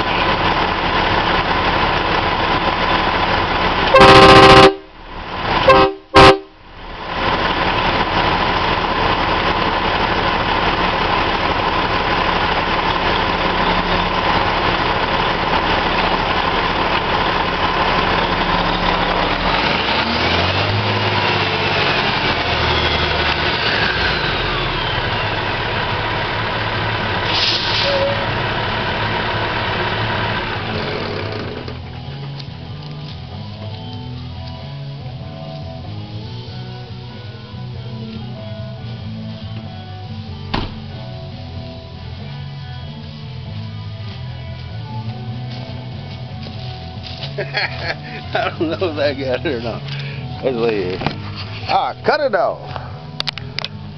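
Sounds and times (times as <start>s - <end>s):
train horn blasts: 3.9s - 5.0s, 5.6s - 6.6s.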